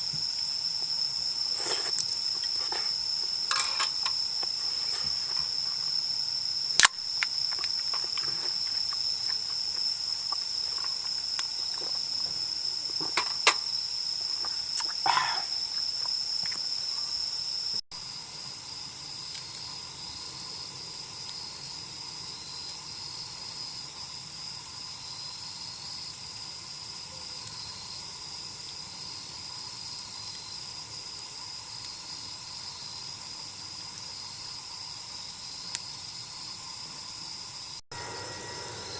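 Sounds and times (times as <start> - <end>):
crickets trilling: 0.0 - 38.9
pulsing insect chorus: 0.0 - 38.9.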